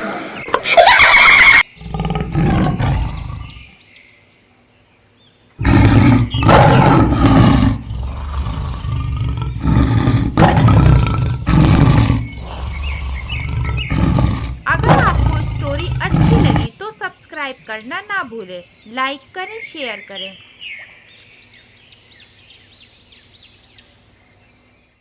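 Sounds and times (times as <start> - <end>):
animal roaring: 1.8 - 3.7, 5.6 - 16.7.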